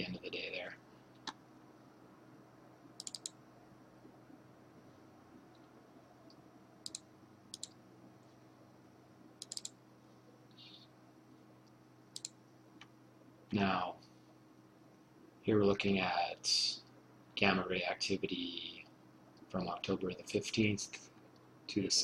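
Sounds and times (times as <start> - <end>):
low steady hum: 0.0 - 22.0
computer mouse clicks: 3.0 - 3.4, 6.3 - 7.8, 9.4 - 9.8, 11.6 - 12.9.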